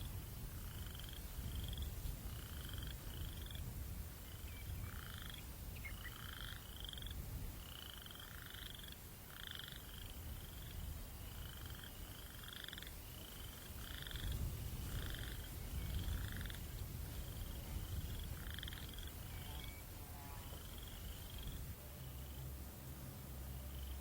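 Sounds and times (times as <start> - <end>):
frogs calling in buzzy trills: 0.0 - 22.7, 23.3 - 24.0
breeze rumble: 9.1 - 24.0.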